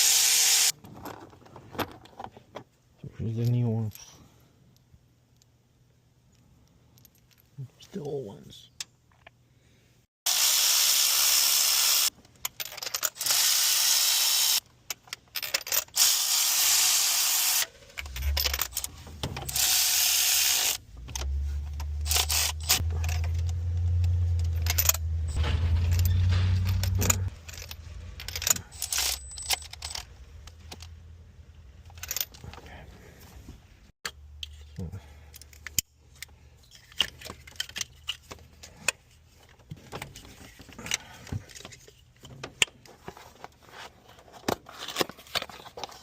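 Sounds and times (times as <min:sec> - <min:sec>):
metal tools clicking and clinking: 0:17.8 - 0:19.8, 0:20.6 - 0:30.9.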